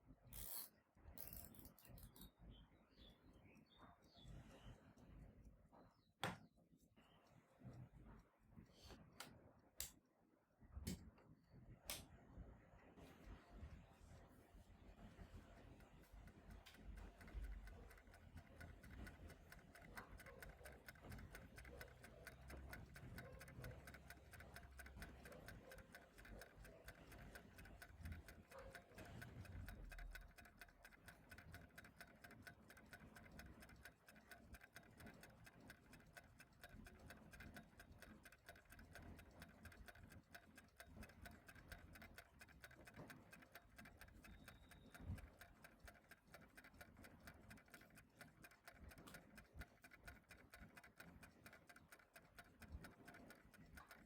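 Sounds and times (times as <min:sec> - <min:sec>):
clock ticking: 0:15.0 - 0:54.0.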